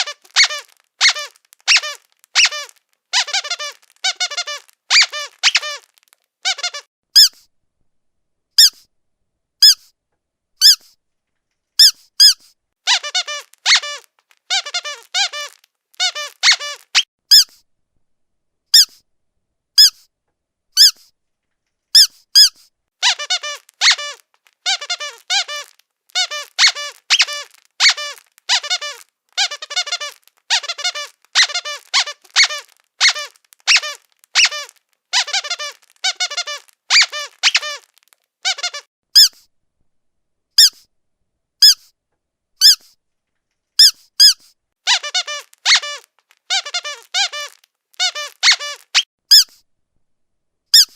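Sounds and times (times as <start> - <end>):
squeaky dog toy squeaking: 0.0 - 7.5, 8.6 - 8.9, 9.6 - 9.9, 10.6 - 11.0, 11.8 - 17.6, 18.7 - 19.0, 19.8 - 20.1, 20.8 - 21.1, 21.9 - 39.5, 40.6 - 40.9, 41.6 - 41.9, 42.6 - 43.0, 43.8 - 49.6.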